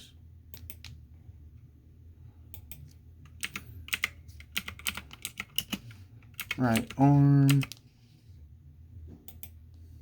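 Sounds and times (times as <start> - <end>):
typing on computer keyboard: 2.6 - 7.8.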